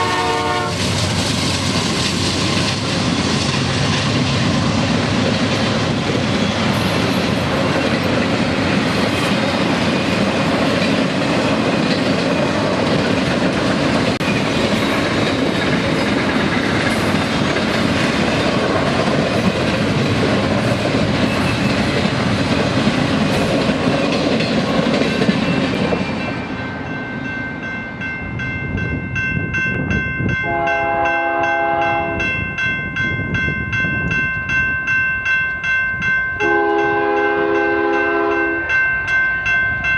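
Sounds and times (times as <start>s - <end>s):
locomotive multi-chime air horn: 0.0s - 0.8s, 30.3s - 32.4s, 36.3s - 39.6s
freight train wheels rumbling: 0.0s - 39.9s.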